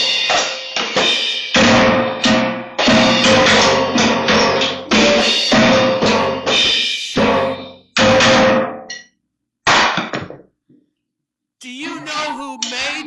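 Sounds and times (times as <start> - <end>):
loud drum-heavy music: 1.0 - 7.4.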